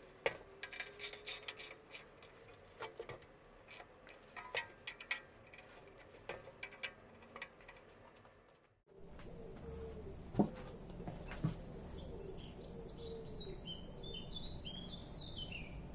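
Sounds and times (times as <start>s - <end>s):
metal tools clicking and tapping: 0.2s - 8.4s.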